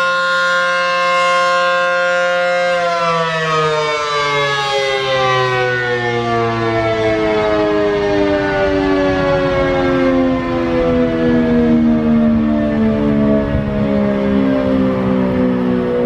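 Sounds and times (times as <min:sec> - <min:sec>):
warning siren winding down: 0:00.0 - 0:16.0.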